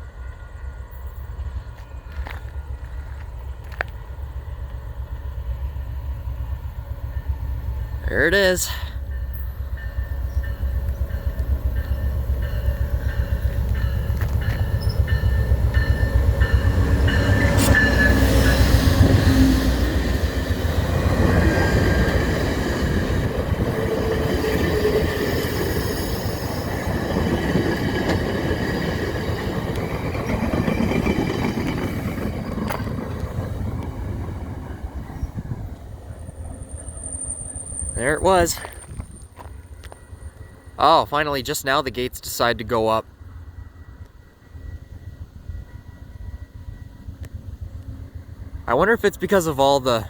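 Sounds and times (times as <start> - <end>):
diesel train rumbling: 0.0 - 50.0
wheels on rails: 1.0 - 40.6.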